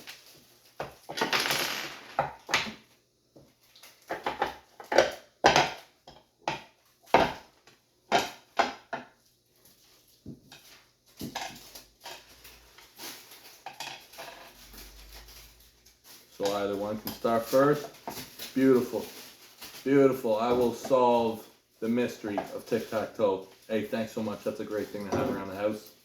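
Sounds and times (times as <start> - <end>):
game pieces rattling: 1.1 - 2.4
game pieces clacking: 1.1 - 2.8.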